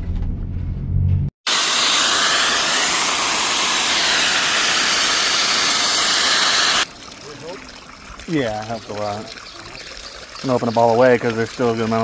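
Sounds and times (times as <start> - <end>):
water hissing from leaking pipe: 1.5 - 12.0.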